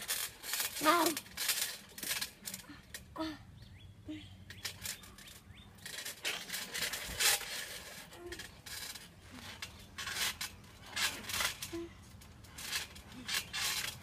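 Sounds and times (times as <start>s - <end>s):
clothing and bodies rustling: 4.7s - 14.0s.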